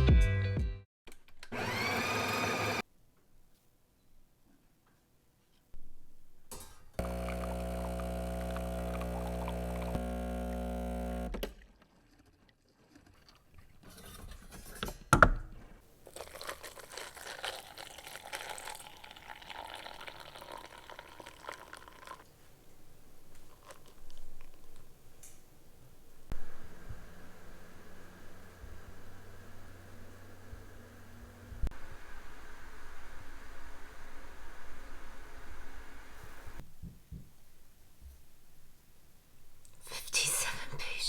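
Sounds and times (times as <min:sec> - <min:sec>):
appliance motor buzzing: 0:01.5 - 0:02.8, 0:07.0 - 0:11.5
liquid pouring: 0:07.0 - 0:10.7, 0:16.0 - 0:22.3, 0:23.3 - 0:24.9.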